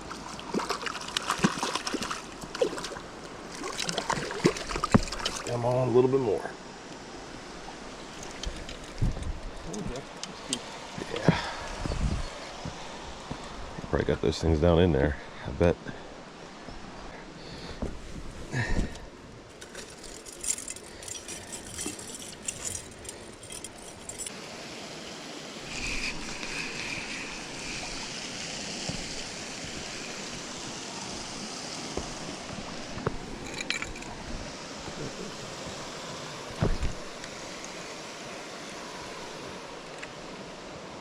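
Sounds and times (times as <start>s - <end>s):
river water flowing: 0.0s - 41.0s
light clinks and rattles: 8.2s - 11.3s, 19.5s - 24.3s, 33.3s - 34.2s.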